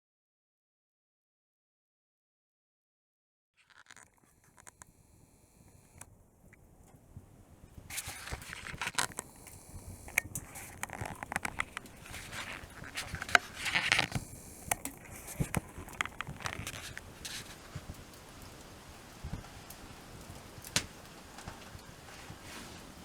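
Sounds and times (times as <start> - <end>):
twigs rustling and scraping: 3.6 - 4.8, 7.9 - 18.0
twigs snapping: 7.9 - 17.7, 20.6 - 21.6.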